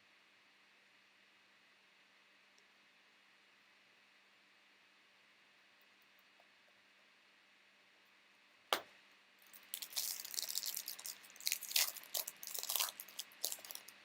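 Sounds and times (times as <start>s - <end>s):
wrapper crinkling and tearing: 9.5s - 14.0s.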